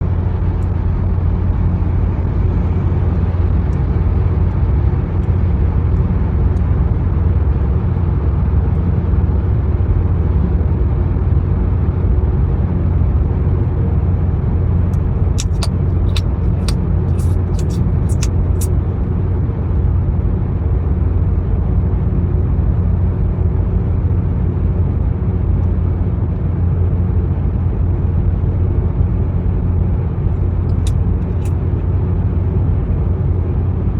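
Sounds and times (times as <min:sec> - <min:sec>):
road and engine rumble in car: 0:00.0 - 0:33.9
sharp clicks: 0:14.9 - 0:18.7, 0:30.7 - 0:31.6.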